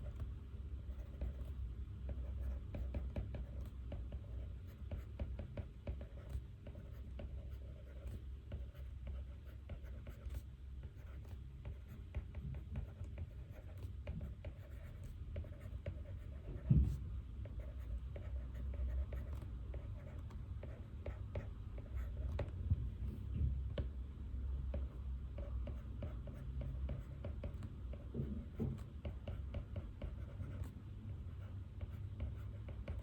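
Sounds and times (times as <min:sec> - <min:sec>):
pen scratching on paper: 0:00.9 - 0:22.5, 0:24.7 - 0:33.0.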